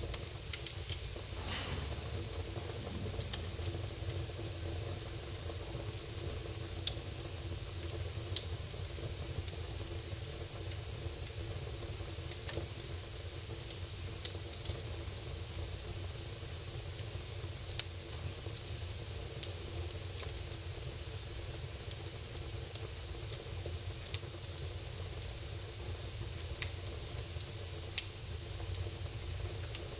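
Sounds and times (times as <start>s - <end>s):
fire crackling and popping: 0.5s - 5.4s, 26.2s - 29.9s.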